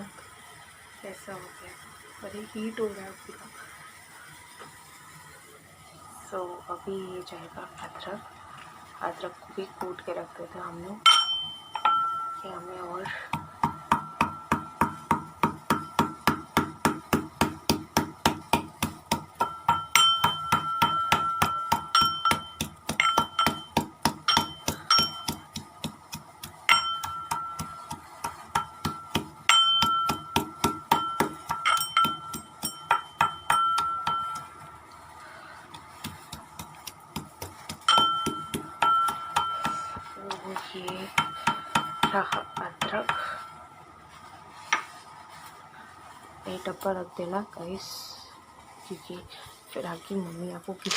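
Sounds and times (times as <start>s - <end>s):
pestle pounding in a mortar: 11.1s - 34.6s, 35.7s - 43.4s.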